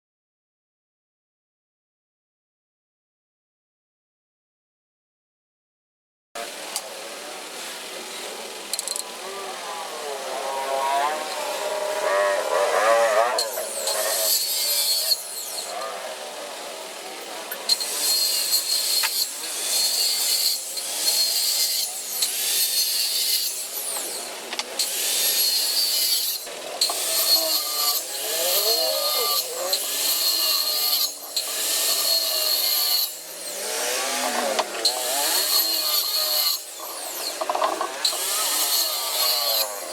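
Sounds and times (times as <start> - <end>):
hand tool rasping wood: 17.7 - 39.9.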